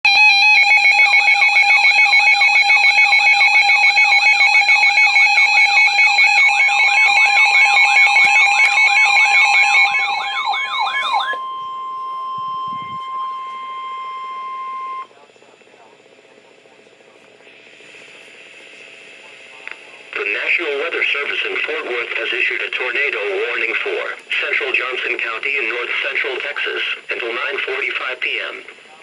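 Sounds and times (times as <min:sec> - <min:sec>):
electronic alarm steady tone: 0:00.0 - 0:15.1
fast warbling alarm tone: 0:00.1 - 0:15.1.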